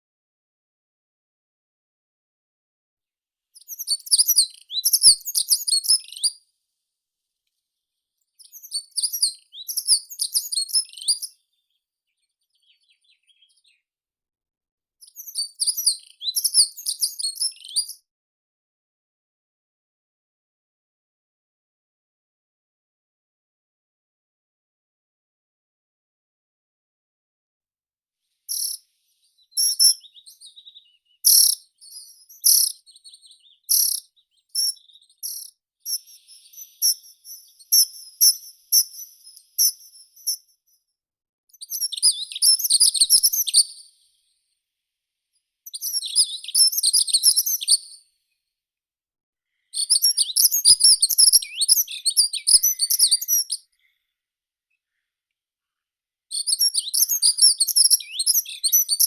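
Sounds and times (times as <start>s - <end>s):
songbirds singing: 3.6s - 6.4s, 8.3s - 13.9s, 15.1s - 18.0s, 28.5s - 40.6s, 41.5s - 43.9s, 45.7s - 47.8s, 49.5s - 54.1s, 56.4s - 59.0s.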